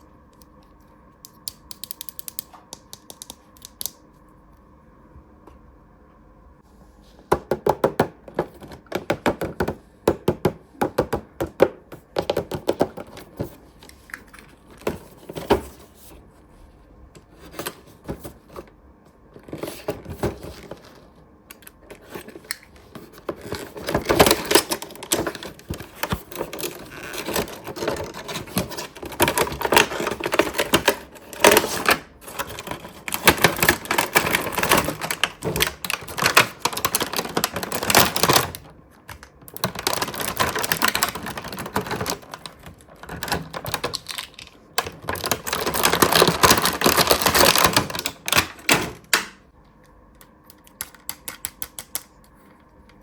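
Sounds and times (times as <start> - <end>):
plastic toy pieces clicking: 1.5 - 4.0.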